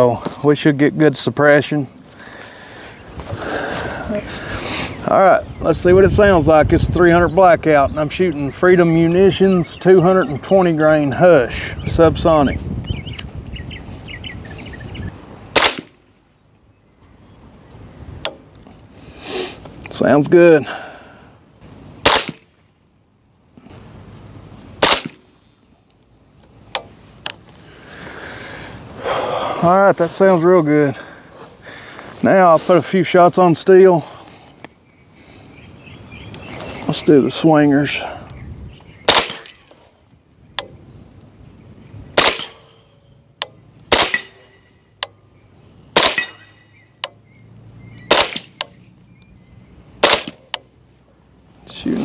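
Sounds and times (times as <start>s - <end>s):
bullets striking steel targets: 15.5s - 16.0s, 22.0s - 22.6s, 24.8s - 25.3s, 39.1s - 39.9s, 42.2s - 45.2s, 46.0s - 47.2s, 48.0s - 48.8s, 50.0s - 50.7s
suppressed rifle shot: 15.5s - 16.0s, 22.0s - 22.5s, 24.8s - 25.2s, 39.1s - 39.6s, 42.2s - 42.7s, 48.1s - 48.7s, 50.0s - 50.4s.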